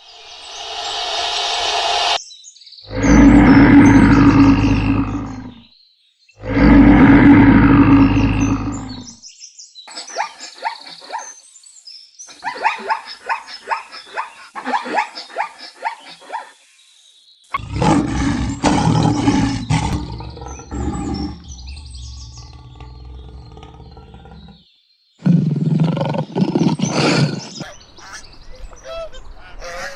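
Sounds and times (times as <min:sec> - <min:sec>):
big cat roaring: 0:02.9 - 0:05.6, 0:06.4 - 0:09.2, 0:17.6 - 0:24.6
long growling roar: 0:02.9 - 0:05.7, 0:06.4 - 0:09.2, 0:17.6 - 0:24.6.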